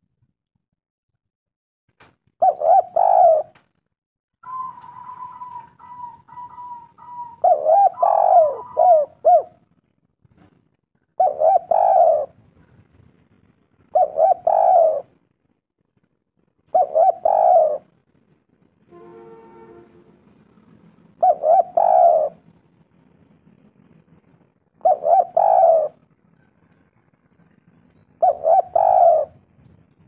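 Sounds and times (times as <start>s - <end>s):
dove cooing: 2.4s - 3.6s, 4.4s - 9.7s, 11.1s - 12.4s, 13.8s - 15.2s, 16.7s - 17.9s, 21.1s - 22.5s, 24.8s - 26.9s, 28.2s - 29.5s.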